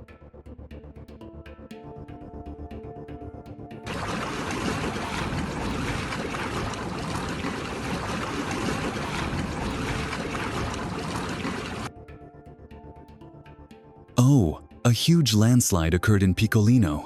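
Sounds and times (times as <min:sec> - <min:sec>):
rushing water roar: 0:03.9 - 0:11.9.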